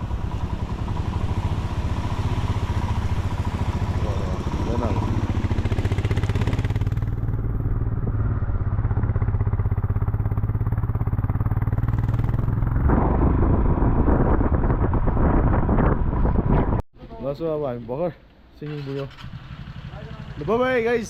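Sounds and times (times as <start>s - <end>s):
vehicle engine running: 0.0s - 12.8s.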